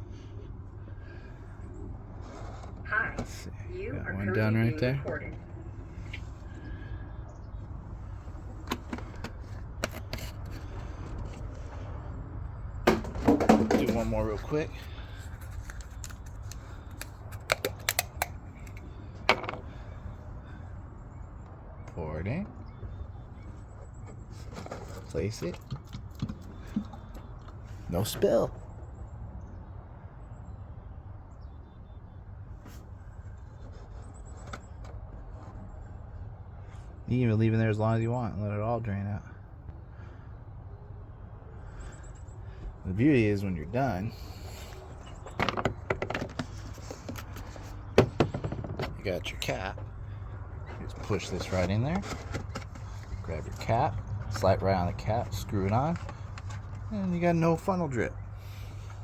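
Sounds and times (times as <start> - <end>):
light handling clicks and knocks: 15.3 - 19.8, 45.0 - 54.5.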